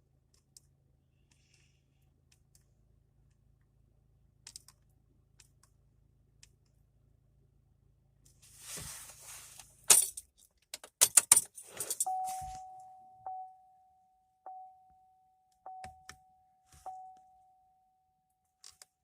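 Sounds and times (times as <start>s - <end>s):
keys jangling: 9.9s - 10.3s, 11.0s - 12.6s.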